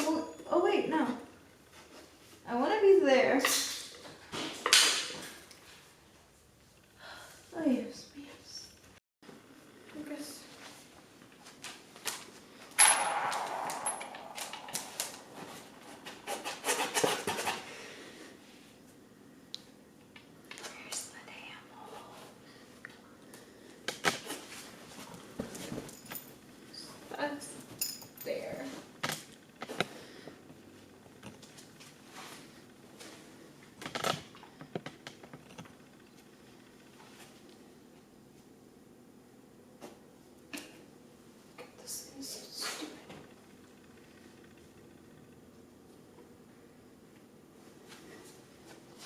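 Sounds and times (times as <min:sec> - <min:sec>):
loud clatter: 0:12.8 - 0:17.4.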